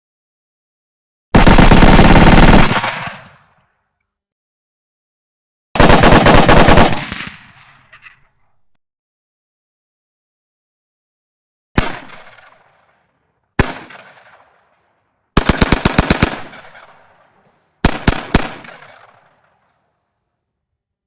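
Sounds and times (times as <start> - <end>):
machine gun shots echoing: 1.3 - 3.5, 5.8 - 8.3, 13.6 - 14.6, 15.4 - 19.5.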